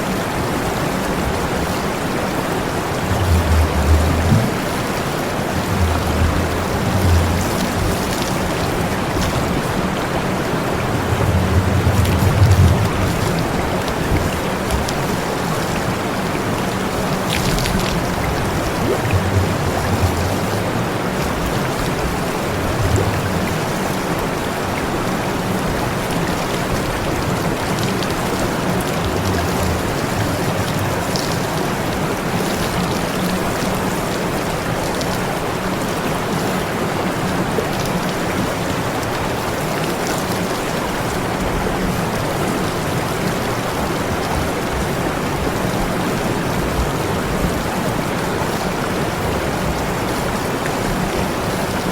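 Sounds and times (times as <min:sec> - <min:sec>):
low rumble: 0:02.8 - 0:15.1, 0:17.4 - 0:21.7.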